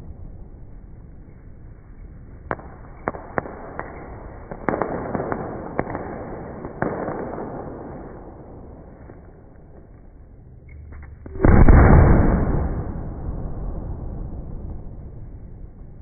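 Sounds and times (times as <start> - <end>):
firework bangs: 2.4 - 10.0, 11.2 - 16.0
crackling firework pops: 2.4 - 10.2.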